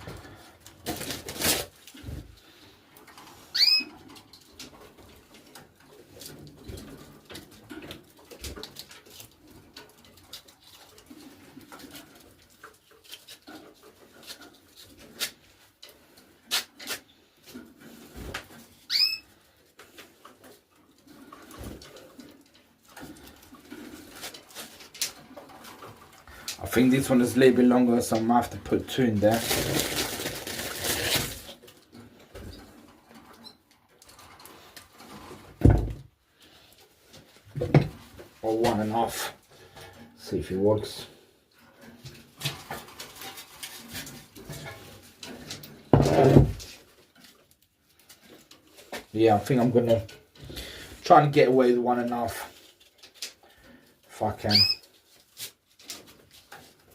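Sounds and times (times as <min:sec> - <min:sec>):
sandpaper rustling and scraping: 0:29.2 - 0:31.6.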